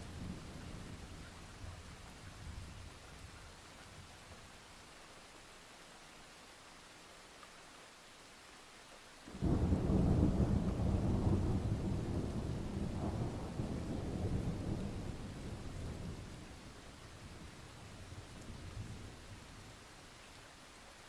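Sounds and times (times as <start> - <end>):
rain hissing: 7.2 - 21.0
thunder rumbling: 9.3 - 19.3.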